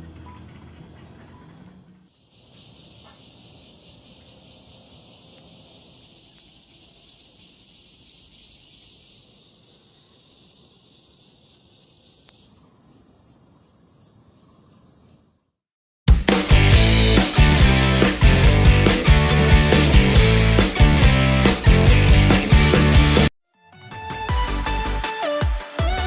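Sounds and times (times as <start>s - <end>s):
cicadas buzzing: 0.0s - 15.7s.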